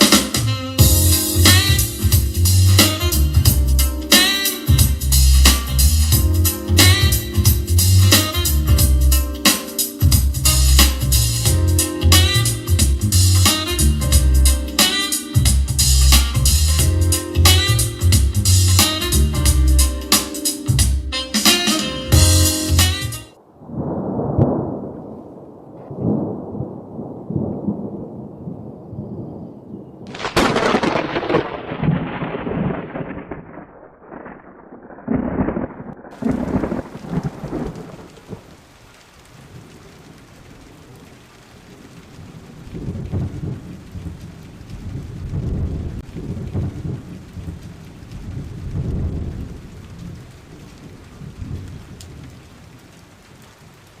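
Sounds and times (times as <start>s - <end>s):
steady rain: 0.0s - 54.0s
low rolling thunder: 23.4s - 38.6s, 39.3s - 53.4s
sharp thunderclap: 23.6s - 29.3s, 30.0s - 38.5s, 42.7s - 52.4s.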